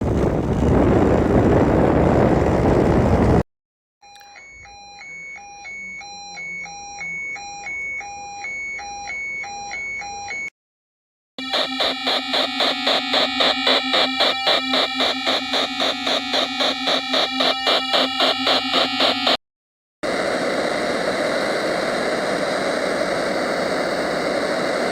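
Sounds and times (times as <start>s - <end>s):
alternating low and high beeping: 11.4s - 19.4s
harsh pulsing alarm chord: 11.4s - 19.4s
loud static burst: 11.4s - 19.4s, 20.1s - 24.9s.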